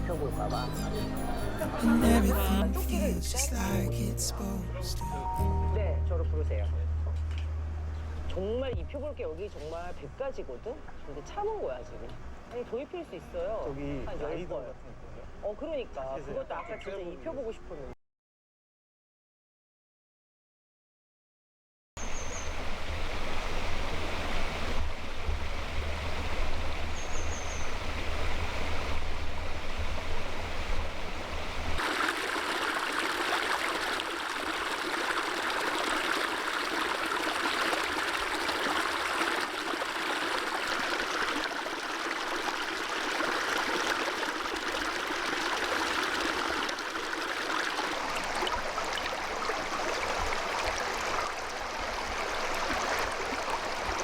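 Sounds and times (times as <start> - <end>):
bird chirping: 22.0 - 22.5, 26.9 - 27.8
stream running over rocks: 22.0 - 54.0.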